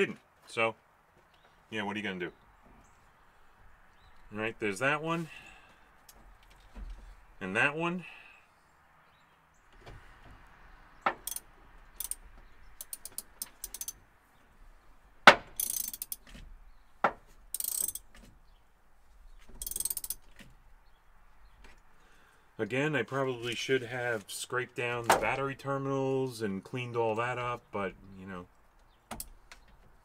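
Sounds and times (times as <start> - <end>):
socket ratchet clicking: 11.2 - 12.2, 12.8 - 14.0, 15.6 - 16.2, 17.6 - 18.1, 19.6 - 20.2.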